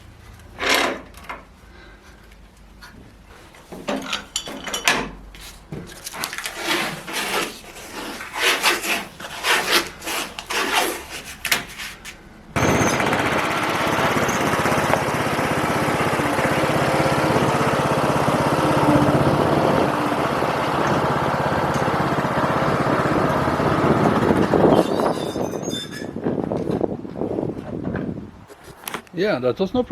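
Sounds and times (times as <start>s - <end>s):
garden tractor engine running: 12.6s - 25.0s.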